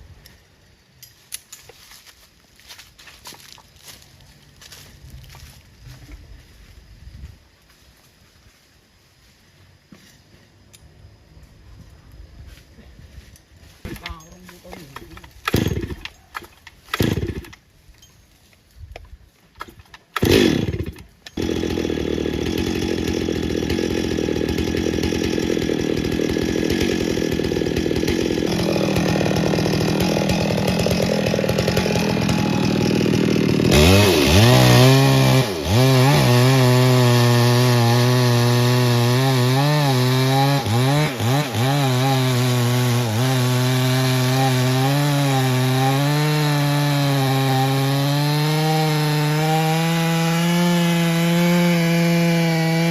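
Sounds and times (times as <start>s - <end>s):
chainsaw cutting wood: 13.9s - 17.6s, 19.6s - 52.9s.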